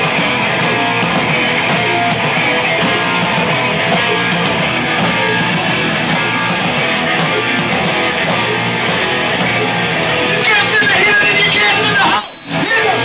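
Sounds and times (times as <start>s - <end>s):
guitar-led rock music: 0.0s - 13.0s.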